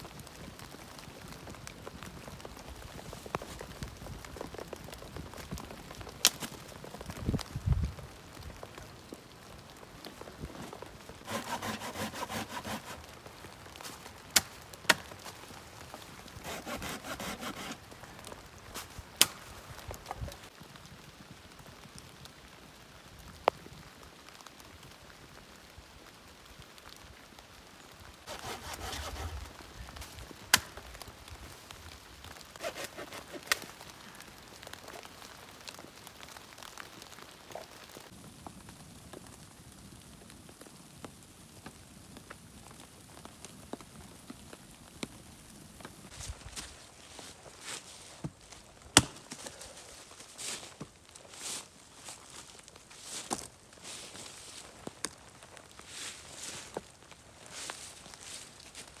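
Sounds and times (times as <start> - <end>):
hand saw cutting wood: 11.2 - 13.1, 13.8 - 15.1, 16.4 - 17.9, 28.3 - 29.5, 32.6 - 33.8.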